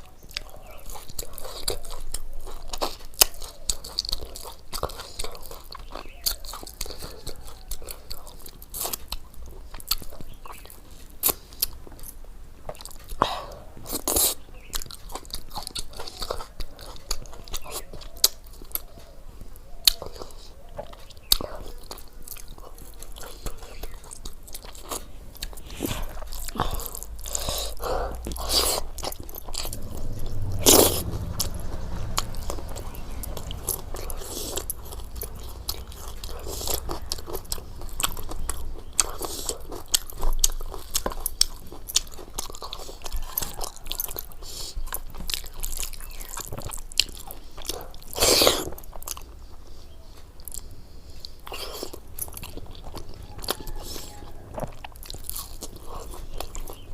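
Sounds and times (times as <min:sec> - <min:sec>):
person chewing crunchy food: 0:00.0 - 0:56.9.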